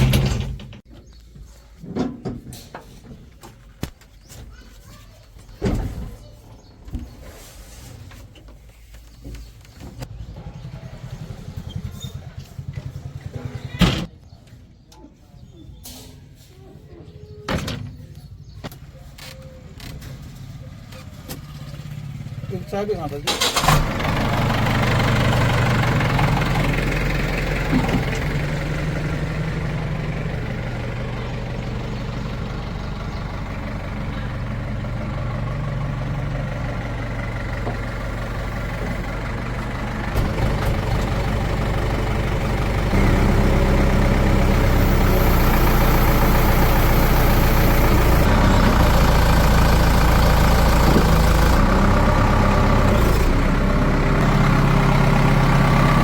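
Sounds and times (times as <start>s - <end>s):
diesel engine idling and revving: 0.0s - 0.8s, 9.9s - 14.2s, 18.4s - 56.0s.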